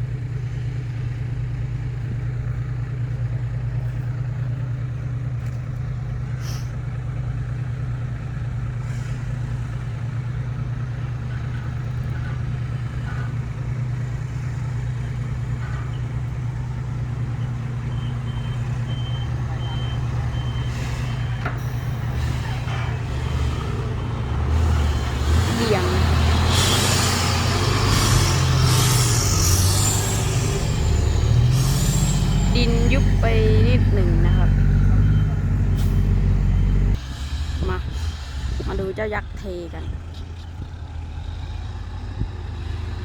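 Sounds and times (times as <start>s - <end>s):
truck diesel engine running: 0.0s - 43.0s
reversing alarm beeps: 17.9s - 22.0s, 29.6s - 36.9s.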